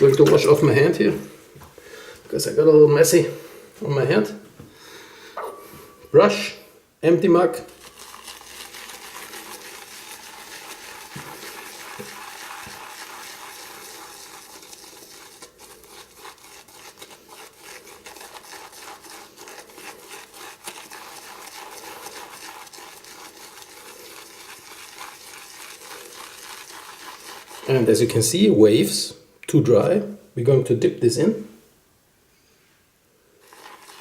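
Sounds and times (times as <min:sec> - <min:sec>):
shaving brush swishing in mug: 0:07.5 - 0:28.3, 0:33.4 - 0:34.0.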